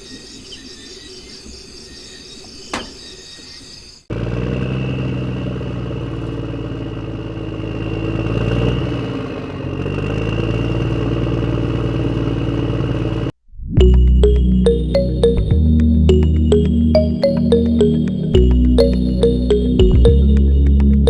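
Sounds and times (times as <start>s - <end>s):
background music: 13.8s - 21.0s.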